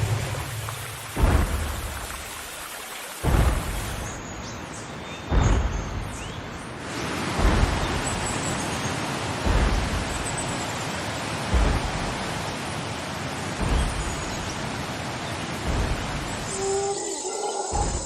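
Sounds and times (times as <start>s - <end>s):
deep heavy thuds: 0.0s - 2.2s, 3.2s - 4.4s, 5.2s - 10.6s, 11.3s - 12.7s, 13.5s - 16.5s.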